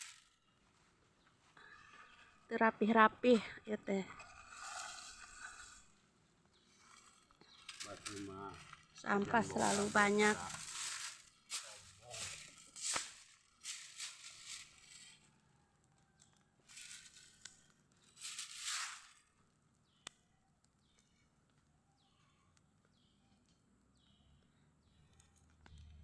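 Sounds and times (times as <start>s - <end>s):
rustling of dry rubbish: 0.0s - 15.3s, 16.6s - 19.3s
bird chirping: 6.5s - 13.0s.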